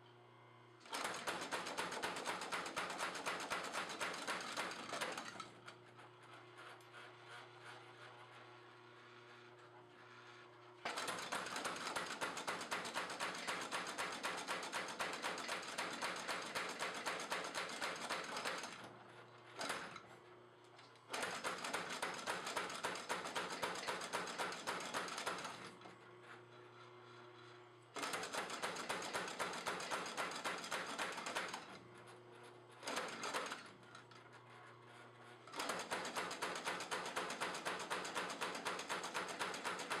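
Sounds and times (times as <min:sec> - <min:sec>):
power hammer rapid blows: 0:35.6 - 0:40.0.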